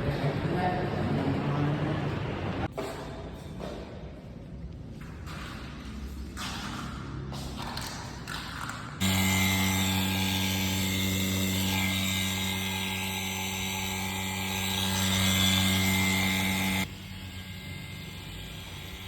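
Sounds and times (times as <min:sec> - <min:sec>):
power tool motor running: 0:09.0 - 0:19.0.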